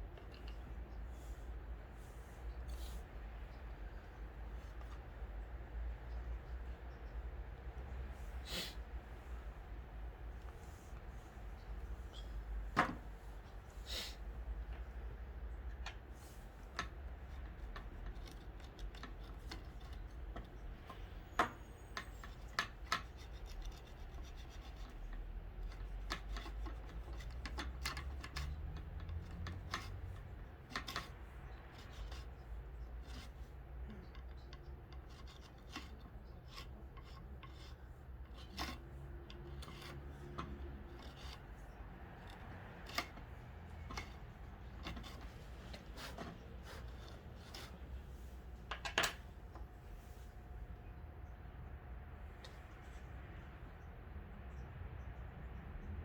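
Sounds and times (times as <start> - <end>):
small parts clicking and tapping: 15.6 - 47.8
rubbing and scraping: 15.8 - 50.6.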